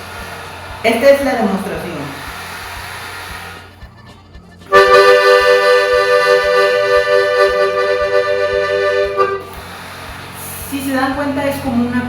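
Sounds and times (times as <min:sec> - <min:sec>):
piano accordion chord: 0:04.6 - 0:10.6.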